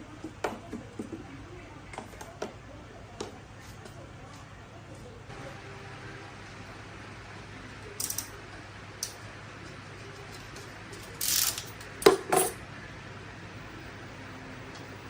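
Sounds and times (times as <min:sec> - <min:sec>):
small metal parts clinking: 0:08.0 - 0:08.3, 0:10.3 - 0:12.6.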